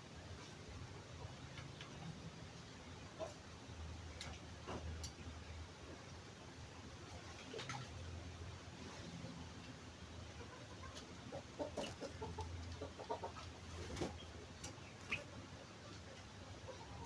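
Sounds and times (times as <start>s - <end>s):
bird clucking: 10.4s - 15.4s.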